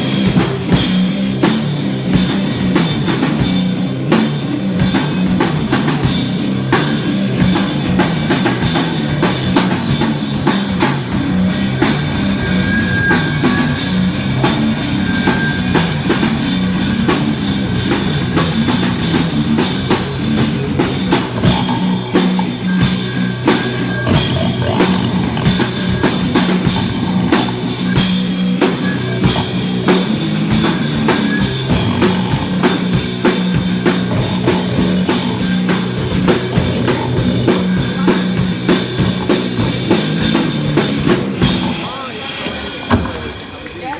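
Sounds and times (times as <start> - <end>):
loud metal band playing: 0.0 - 43.9
vocalist growling: 10.8 - 42.8.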